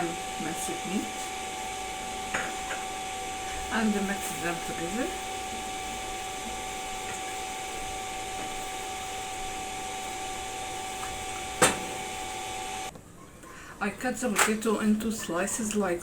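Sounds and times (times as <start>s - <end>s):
machine hiss and hum: 0.0s - 12.9s.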